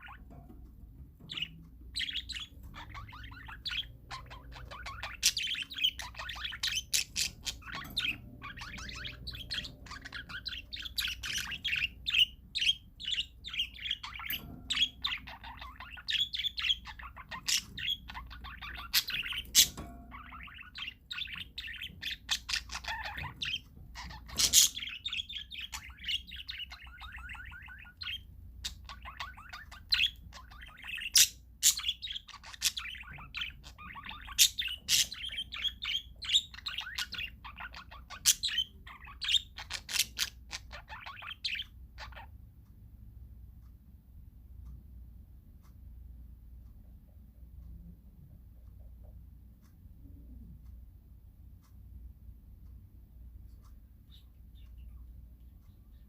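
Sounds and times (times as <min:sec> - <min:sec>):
parakeets chattering: 0:00.0 - 0:00.5, 0:01.2 - 0:42.5.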